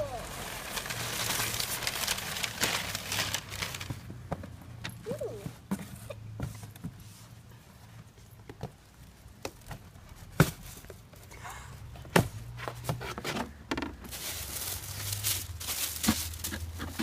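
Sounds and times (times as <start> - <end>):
packing paper rustling: 0.0 - 4.1, 14.1 - 17.0.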